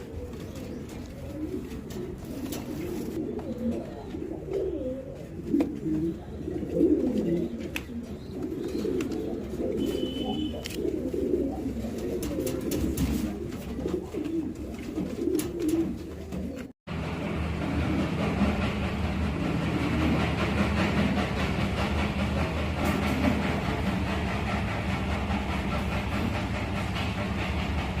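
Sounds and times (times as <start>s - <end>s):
pigeons cooing: 0.0s - 16.8s.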